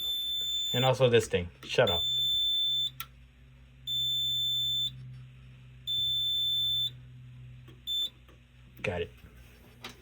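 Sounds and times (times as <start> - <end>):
smoke alarm beeping: 0.0 - 1.2, 1.8 - 3.1, 3.9 - 5.0, 5.9 - 7.0, 7.8 - 8.2
low steady hum: 0.0 - 10.0.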